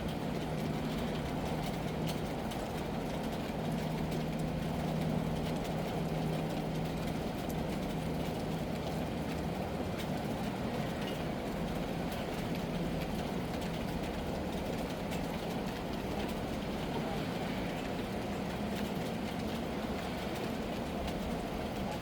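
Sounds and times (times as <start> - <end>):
heavy rain rumbling: 0.0 - 22.0.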